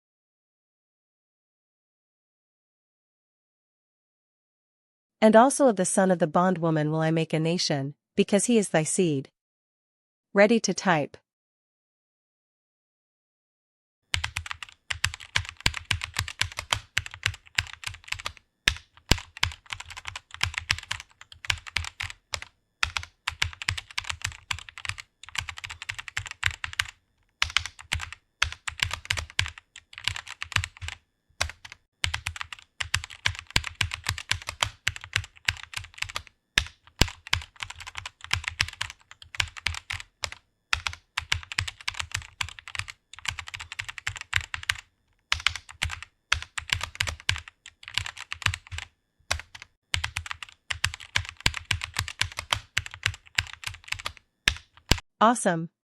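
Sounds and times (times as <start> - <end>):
keyboard typing: 14.1 - 55.0.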